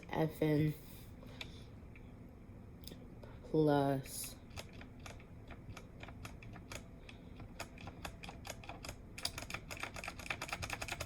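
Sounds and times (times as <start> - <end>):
mechanical keyboard keys clacking: 4.5 - 11.0.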